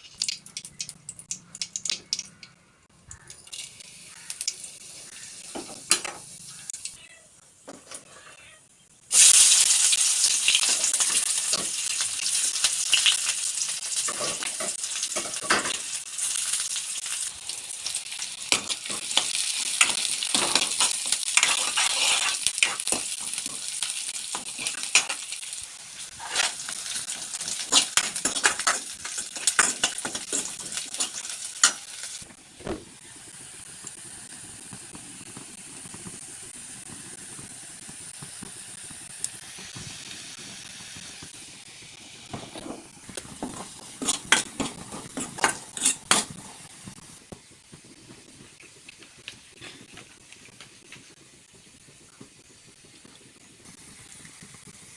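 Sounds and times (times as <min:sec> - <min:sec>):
food sizzling in hot oil: 0:00.0 - 0:02.5, 0:03.1 - 0:07.0, 0:09.0 - 0:54.9
utensil stirring and scraping: 0:19.8 - 0:23.6, 0:42.3 - 0:46.6
kitchen utensils clattering: 0:43.3 - 0:46.4.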